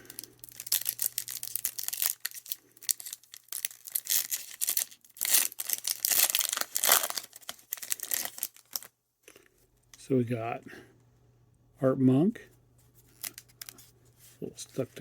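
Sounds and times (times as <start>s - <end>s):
wrapper tearing and crinkling: 0.0s - 8.9s, 13.1s - 13.8s.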